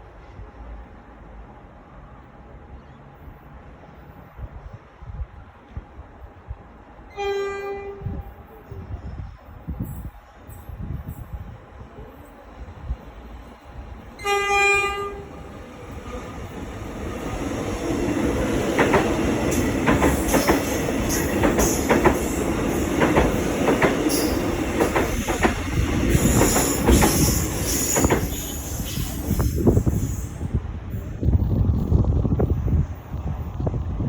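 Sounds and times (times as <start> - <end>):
train horn blast: 7.1 - 8.4, 14.2 - 15.4
train wheels rushing on rails: 8.0 - 34.0
wheels clicking over rail joints: 18.4 - 28.4.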